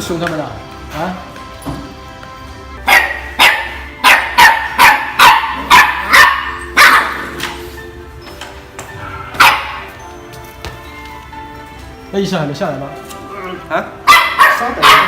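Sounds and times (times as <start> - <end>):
dog barking: 2.8 - 7.4, 9.2 - 10.0, 14.0 - 15.0.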